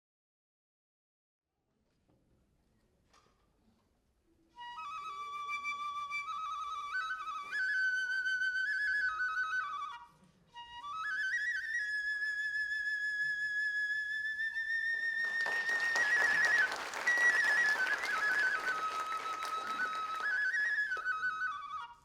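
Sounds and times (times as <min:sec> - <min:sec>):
bamboo flute melody: 0:04.5 - 0:22.0.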